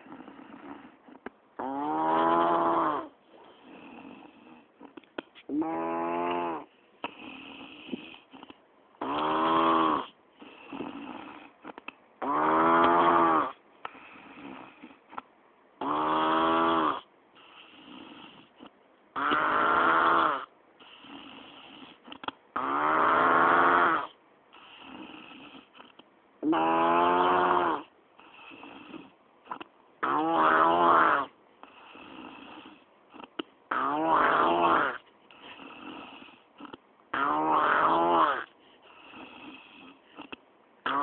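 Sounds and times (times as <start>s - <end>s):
person snoring heavily: 0.0s - 15.1s, 15.8s - 41.0s
breathy breathing sound: 13.8s - 15.2s, 20.8s - 22.2s, 35.0s - 36.8s, 38.4s - 40.4s.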